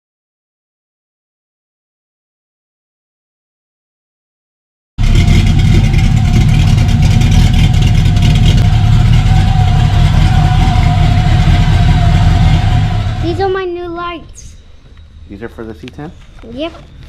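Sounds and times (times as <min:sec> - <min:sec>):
vehicle engine running: 0:05.0 - 0:14.2.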